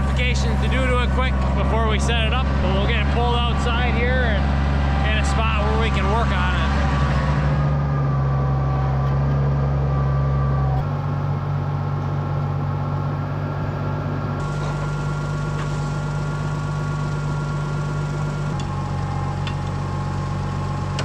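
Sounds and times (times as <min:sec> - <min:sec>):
tractor engine running: 0:00.0 - 0:21.0.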